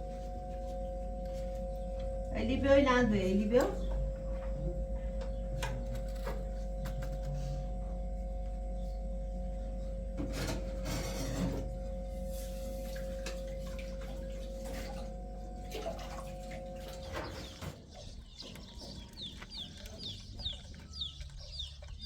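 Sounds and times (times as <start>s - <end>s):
steady two-tone hum: 0.0s - 22.0s
bird chirping: 16.9s - 22.0s.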